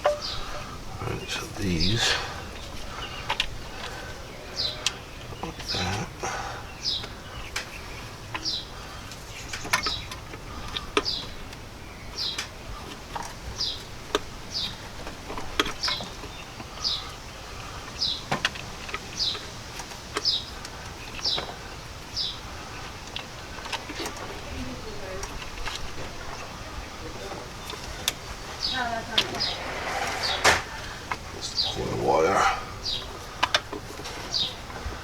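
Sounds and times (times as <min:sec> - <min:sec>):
bird chirping: 0:00.0 - 0:12.4, 0:27.6 - 0:33.3.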